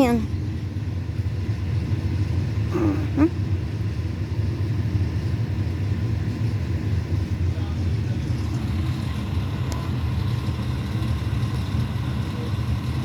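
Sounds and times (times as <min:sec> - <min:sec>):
fire truck engine idling: 0:00.0 - 0:13.0
wavering voice: 0:02.7 - 0:03.3.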